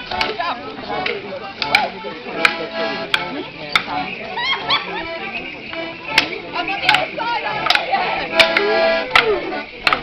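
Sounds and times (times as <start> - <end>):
wooden sticks clacking together: 1.0 - 3.9, 6.2 - 10.0.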